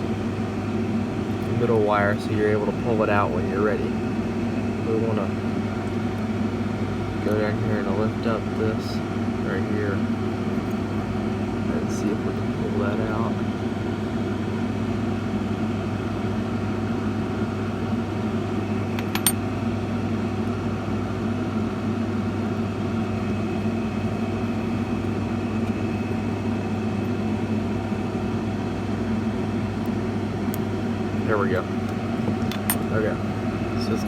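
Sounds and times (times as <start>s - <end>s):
low machine hum: 0.0s - 34.0s.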